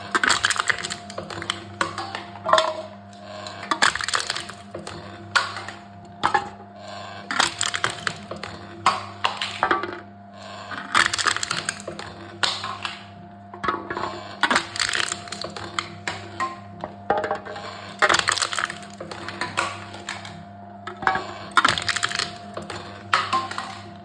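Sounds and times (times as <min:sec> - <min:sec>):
cans crushing in machine: 0:00.0 - 0:06.5, 0:07.2 - 0:10.0, 0:10.7 - 0:13.0, 0:13.6 - 0:24.0
steady machine hum: 0:00.0 - 0:24.0.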